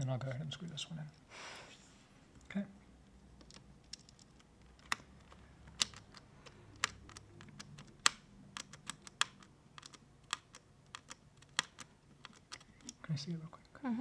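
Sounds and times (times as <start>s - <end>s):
small screws clicking: 3.4s - 13.0s.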